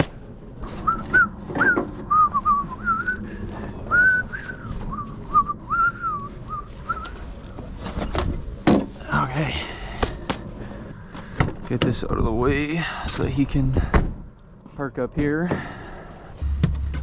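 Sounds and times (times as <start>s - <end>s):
person whistling a tune: 0.8s - 3.3s, 3.9s - 7.2s.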